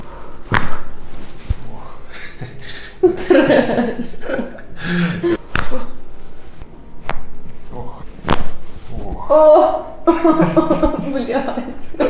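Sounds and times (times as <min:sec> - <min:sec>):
sharp snap: 0:00.3 - 0:01.7, 0:05.5 - 0:05.9, 0:07.0 - 0:07.4, 0:08.2 - 0:09.1
person chuckling: 0:02.1 - 0:05.9, 0:09.3 - 0:12.0
person speaking: 0:07.6 - 0:12.0.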